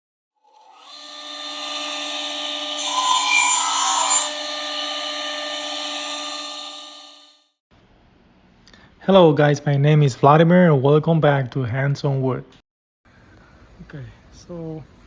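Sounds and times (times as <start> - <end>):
power tool whining: 0.4 - 7.4.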